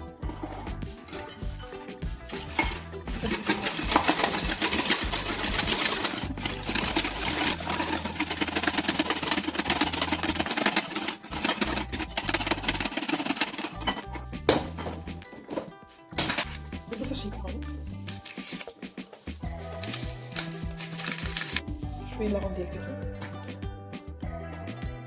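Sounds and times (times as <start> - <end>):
electric hand mixer beating batter: 0.0 - 14.1.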